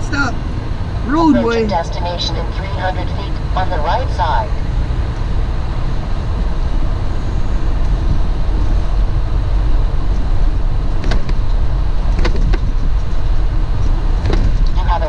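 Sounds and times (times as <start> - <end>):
truck engine and road rumble: 0.0 - 15.0
rattles and knocks: 12.1 - 12.8.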